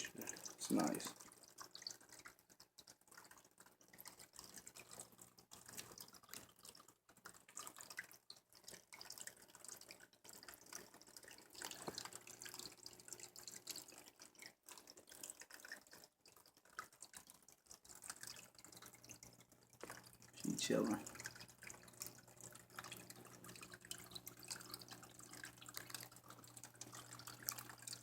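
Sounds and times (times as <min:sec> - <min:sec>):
water trickling and dripping: 0:00.0 - 0:28.0.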